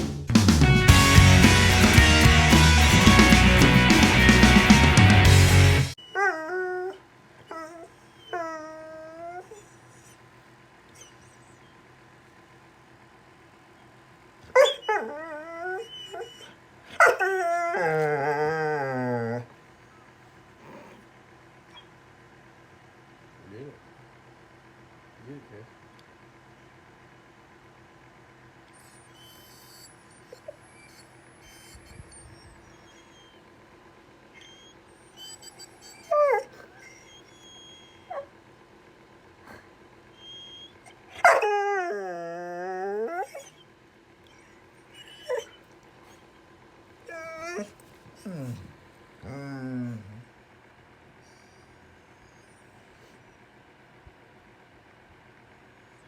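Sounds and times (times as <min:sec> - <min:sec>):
dog whining with yelps: 0:06.0 - 0:10.3, 0:10.9 - 0:11.8, 0:14.4 - 0:21.0, 0:21.7 - 0:22.0, 0:28.7 - 0:33.6, 0:34.3 - 0:38.4, 0:39.4 - 0:46.3, 0:47.0 - 0:50.3, 0:51.2 - 0:53.5.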